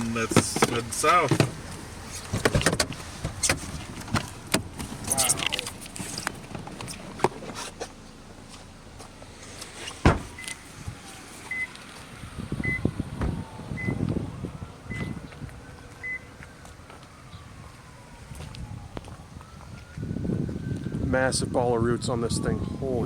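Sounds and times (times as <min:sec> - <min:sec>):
car door slamming: 0:00.0 - 0:07.9, 0:09.6 - 0:11.6
faint siren wailing: 0:09.6 - 0:23.0.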